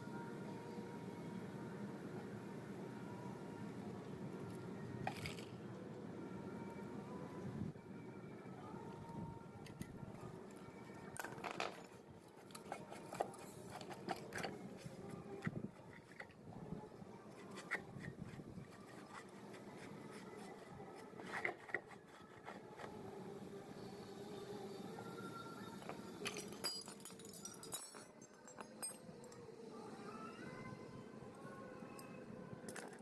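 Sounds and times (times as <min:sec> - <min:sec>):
low steady background hum: 0:00.0 - 0:33.0
scraping on pump parts: 0:11.2 - 0:16.4, 0:17.2 - 0:23.0.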